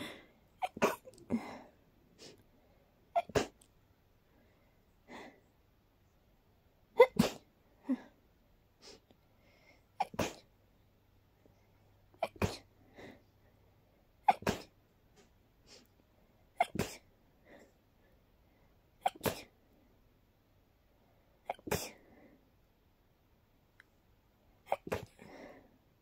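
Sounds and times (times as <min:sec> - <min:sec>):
quiet breaths: 0:00.0 - 0:14.2, 0:14.8 - 0:26.0
person sneezing: 0:00.6 - 0:01.6, 0:03.2 - 0:03.7, 0:07.0 - 0:07.5, 0:10.0 - 0:10.5, 0:12.2 - 0:12.7, 0:14.3 - 0:14.8, 0:16.6 - 0:17.1, 0:19.0 - 0:19.5, 0:21.5 - 0:22.0, 0:24.7 - 0:25.5.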